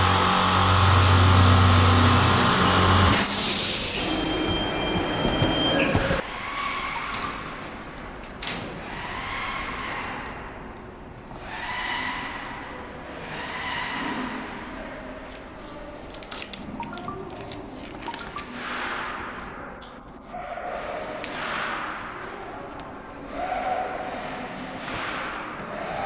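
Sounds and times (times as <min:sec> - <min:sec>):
hiss: 0:00.0 - 0:04.2.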